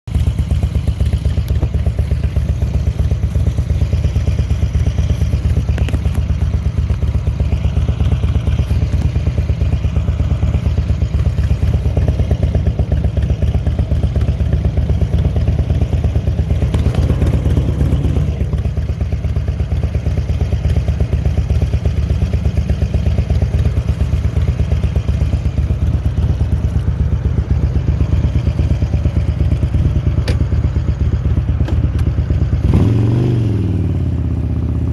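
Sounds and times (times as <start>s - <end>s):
motorcycle engine idling: 0.1s - 34.9s.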